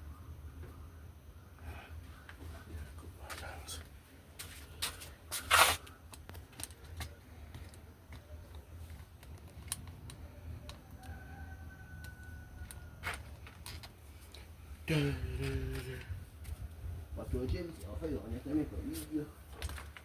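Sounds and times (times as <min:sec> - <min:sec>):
hands handling parts clicking: 0:04.4 - 0:11.2, 0:12.0 - 0:14.5.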